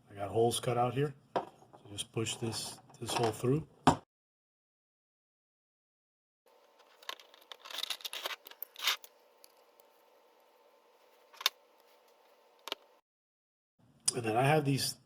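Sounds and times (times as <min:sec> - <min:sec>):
plastic rubbing and scraping: 0:06.5 - 0:13.0.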